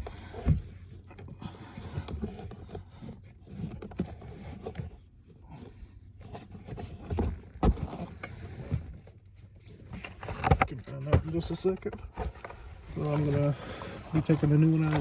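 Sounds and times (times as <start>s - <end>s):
hands scraping and rustling: 0.1s - 15.0s.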